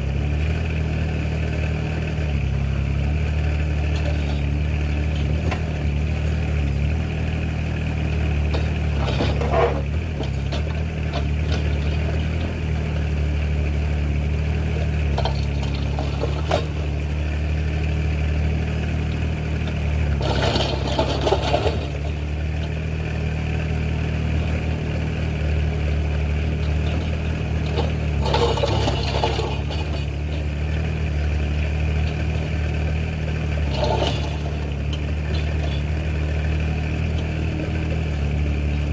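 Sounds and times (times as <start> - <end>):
excavator engine running: 0.0 - 38.9.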